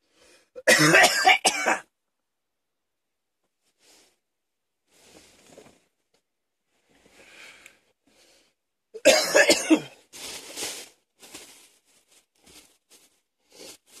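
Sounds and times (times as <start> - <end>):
breathy cough: 0.6 - 1.9, 9.0 - 10.0
man coughing harshly: 0.6 - 1.9, 9.0 - 10.0
soft breaths: 6.7 - 8.7, 10.0 - 14.0.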